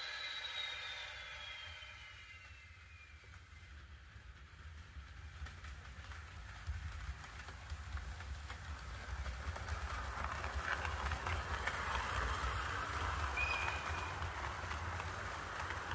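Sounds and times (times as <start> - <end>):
high-pitched squeal: 0.0 - 3.3
electric train rumbling: 0.0 - 15.9.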